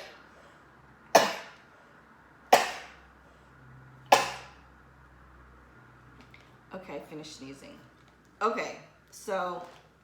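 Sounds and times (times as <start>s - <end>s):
person sneezing: 1.2s - 1.6s, 2.5s - 3.0s, 4.1s - 4.6s.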